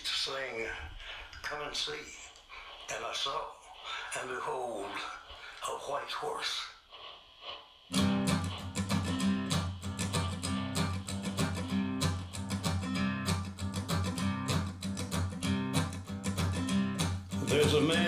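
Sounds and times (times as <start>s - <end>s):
strummed acoustic guitar with bass: 7.9s - 18.0s.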